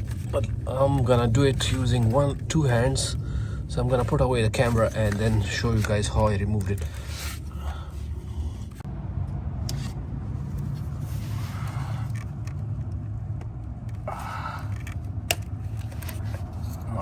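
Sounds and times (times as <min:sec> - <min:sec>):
tool scraping and rustling: 0:00.0 - 0:08.9, 0:14.7 - 0:17.0
steady low rumble: 0:00.0 - 0:17.0.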